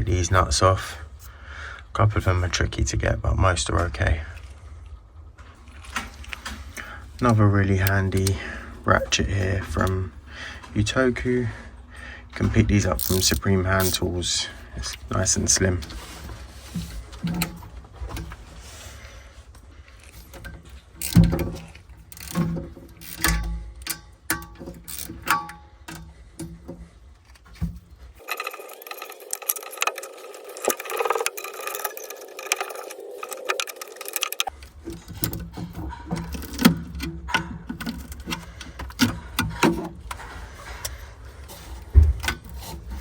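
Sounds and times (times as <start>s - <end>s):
low background hum: 0.0s - 43.0s
hand ratchet clicking: 13.0s - 14.0s, 21.0s - 26.6s, 28.2s - 35.6s
metal tools knocking and clinking: 20.4s - 26.8s.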